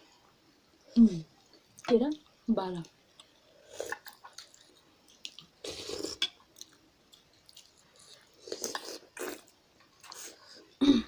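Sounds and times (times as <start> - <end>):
person chewing: 3.1 - 10.7.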